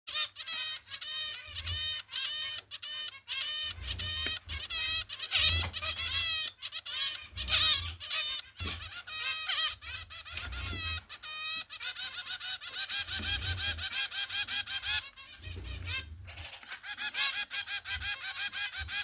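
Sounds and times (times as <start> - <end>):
finch chicks begging calls: 0.1 - 19.0.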